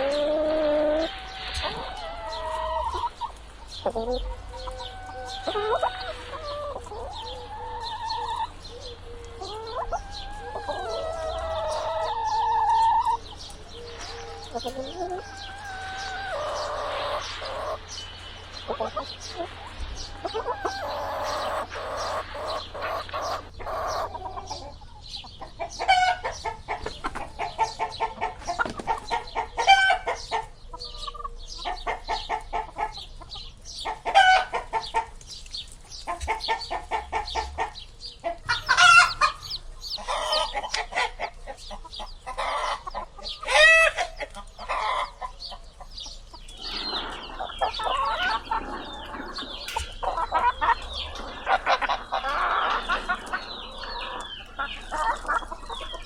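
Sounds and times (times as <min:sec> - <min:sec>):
loud long chicken call: 0:00.0 - 0:03.3, 0:03.9 - 0:17.9, 0:18.7 - 0:24.7, 0:46.6 - 0:56.0
chickens clucking: 0:00.0 - 0:56.0.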